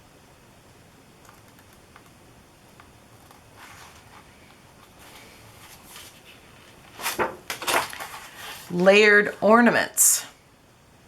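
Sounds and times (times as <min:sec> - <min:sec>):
soft rustling: 0:03.3 - 0:09.0.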